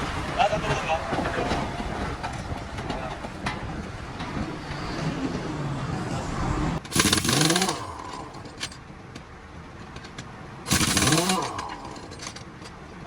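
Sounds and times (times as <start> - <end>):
pneumatic impact wrench bursts: 6.8 - 8.8, 10.7 - 12.4.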